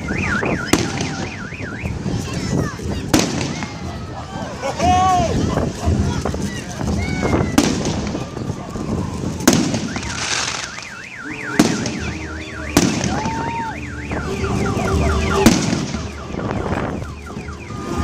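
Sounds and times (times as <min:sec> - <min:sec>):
car alarm warbling and chirping: 0:00.0 - 0:02.0, 0:09.8 - 0:18.0
fireworks bangs: 0:00.0 - 0:04.4, 0:05.3 - 0:18.0.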